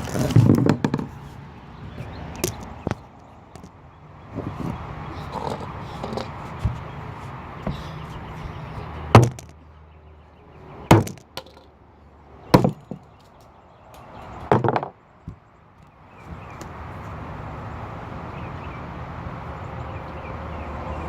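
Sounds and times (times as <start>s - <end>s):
hammer striking plastic cube: 9.2s - 9.5s, 10.9s - 11.6s, 12.6s - 13.0s.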